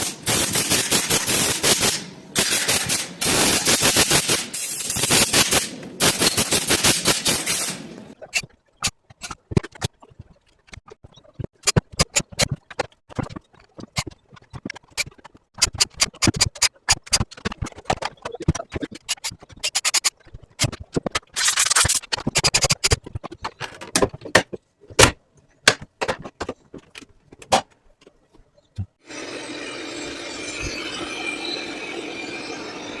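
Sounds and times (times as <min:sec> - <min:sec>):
plastic parts clicking and knocking: 0:08.3 - 0:29.0.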